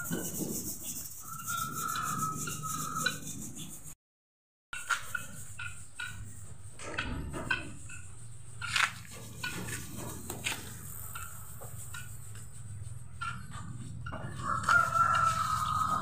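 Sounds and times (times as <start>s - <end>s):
chickens calling: 13.2s - 16.0s.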